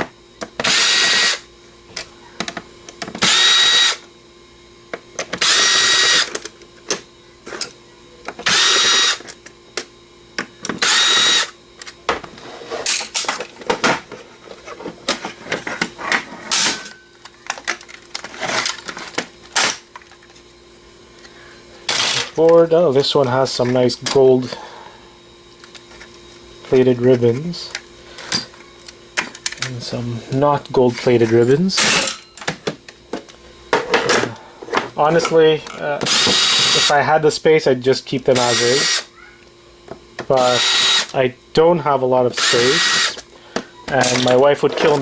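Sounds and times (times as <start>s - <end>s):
power drill whirring: 0.6s - 1.5s, 3.2s - 4.1s, 5.3s - 6.4s, 8.4s - 9.3s, 10.7s - 11.6s, 21.8s - 22.3s, 36.0s - 37.0s, 38.3s - 39.1s, 40.4s - 41.2s, 42.3s - 43.2s
clicks and knocks of parts: 5.2s - 20.4s, 27.7s - 29.8s.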